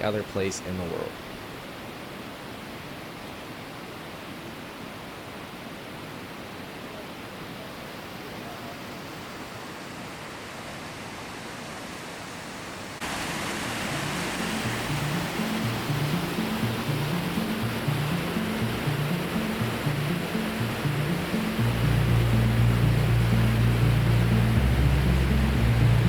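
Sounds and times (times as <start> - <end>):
stream water rushing: 0.0 - 26.0
background music with low notes: 13.8 - 26.0.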